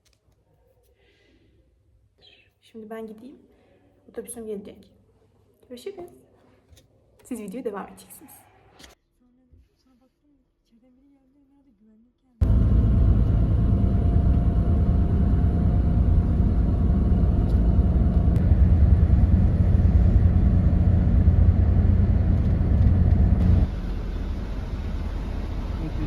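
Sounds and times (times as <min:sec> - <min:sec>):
bus engine rumble: 0:12.4 - 0:26.0
road noise: 0:12.4 - 0:26.0.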